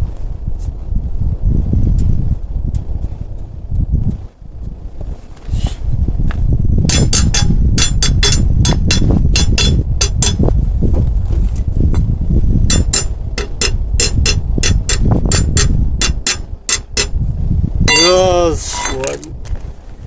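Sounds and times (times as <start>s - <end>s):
low steady rumble: 0.0s - 20.0s
metallic tool clinks on car wheel: 6.9s - 10.5s, 12.7s - 17.2s, 17.9s - 19.2s.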